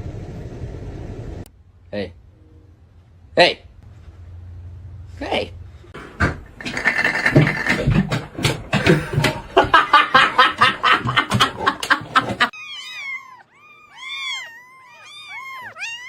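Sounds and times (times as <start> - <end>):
rapid clattering and knocking: 6.0 - 12.5
pet's high-pitched cries: 12.5 - 16.0.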